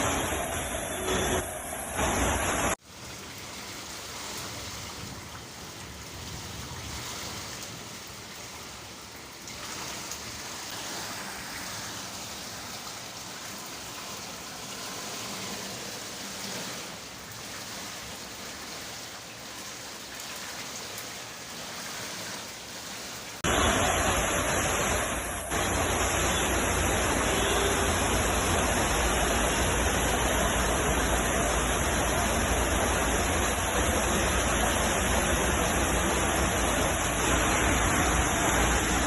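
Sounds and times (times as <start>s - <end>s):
running water: 0.0s - 39.0s
steady rain falling: 0.0s - 39.0s
loud rushing noise: 23.4s - 39.0s.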